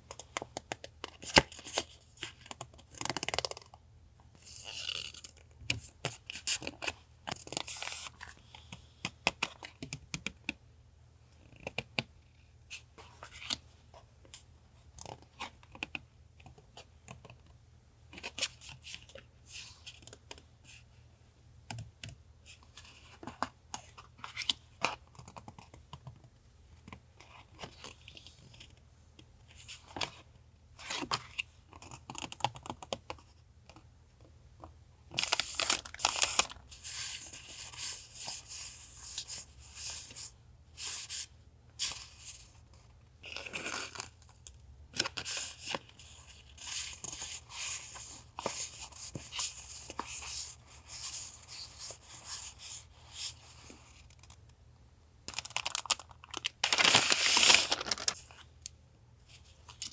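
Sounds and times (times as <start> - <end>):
paper rustling and tapping: 55.3 - 58.4
paper tearing and crinkling: 55.4 - 58.4.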